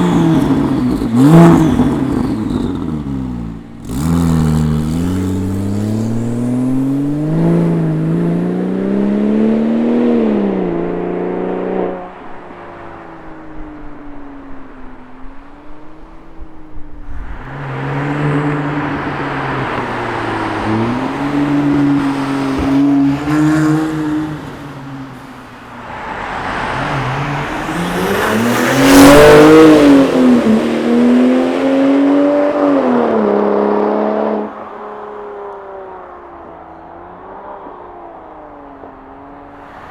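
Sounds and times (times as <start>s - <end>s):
car engine revving while driving: 0.0s - 12.6s, 16.4s - 25.2s, 26.0s - 34.9s.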